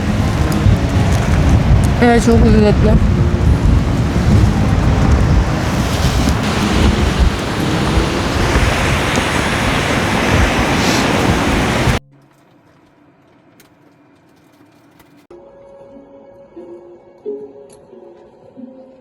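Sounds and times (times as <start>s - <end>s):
gusting wind buffeting microphone: 0.0s - 12.0s.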